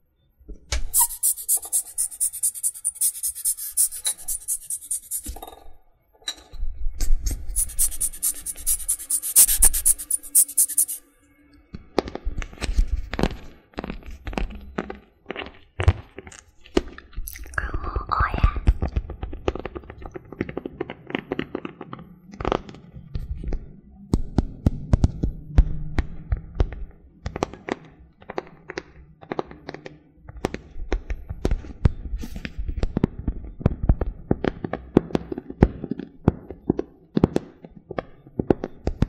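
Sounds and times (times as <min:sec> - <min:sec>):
rapid scratching: 0:01.0 - 0:05.4, 0:07.5 - 0:11.0.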